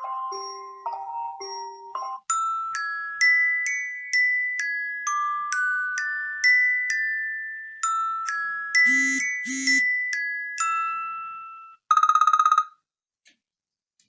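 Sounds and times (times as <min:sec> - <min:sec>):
phone ringtone chime notes: 0:08.8 - 0:09.8.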